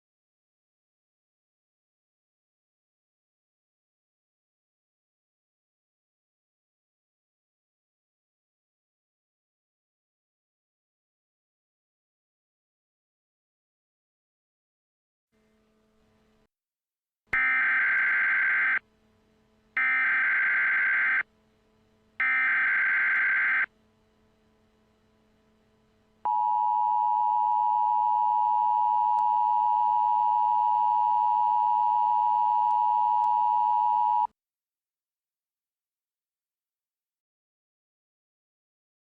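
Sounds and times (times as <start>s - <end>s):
steady attention tone: 17.4s - 34.3s.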